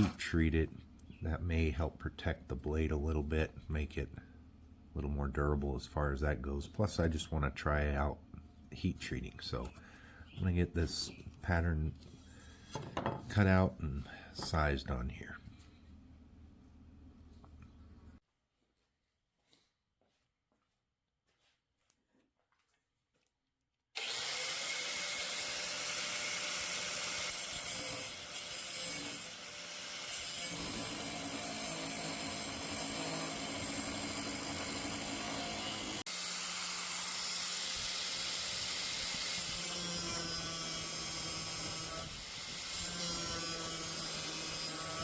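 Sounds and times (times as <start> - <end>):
power tool cutting steel: 0.0 - 0.3, 24.0 - 45.0.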